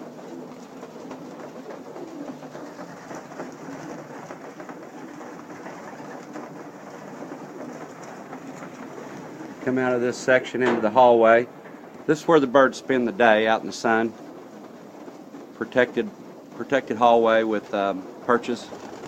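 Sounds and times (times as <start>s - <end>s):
pigeons cooing: 0.0s - 19.0s.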